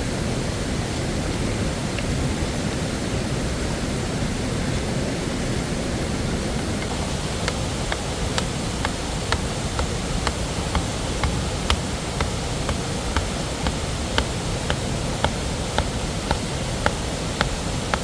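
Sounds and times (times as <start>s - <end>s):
waterfall rushing: 6.8s - 18.0s.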